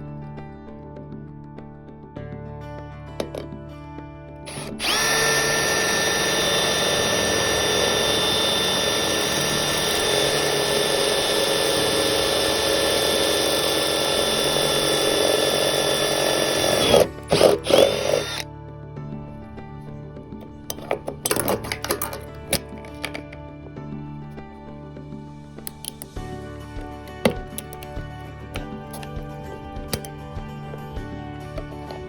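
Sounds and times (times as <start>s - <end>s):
power drill whining: 4.5s - 18.5s, 20.4s - 23.4s, 28.6s - 30.9s.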